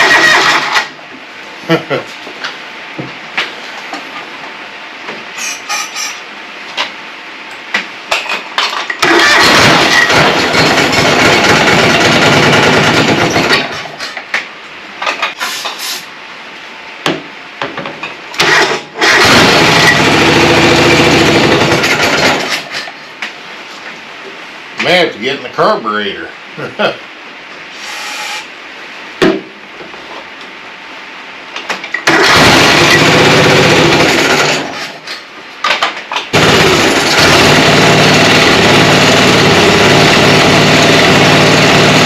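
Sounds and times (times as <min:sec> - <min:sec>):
lawn tractor engine cranking: 0:00.0 - 0:00.9, 0:09.0 - 0:13.7, 0:18.4 - 0:22.7, 0:32.0 - 0:34.8, 0:36.4 - 0:42.0.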